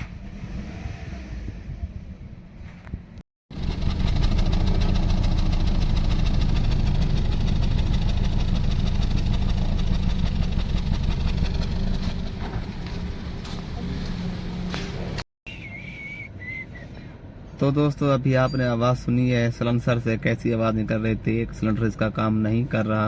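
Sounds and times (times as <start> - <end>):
car engine idling unevenly: 3.5 - 15.2.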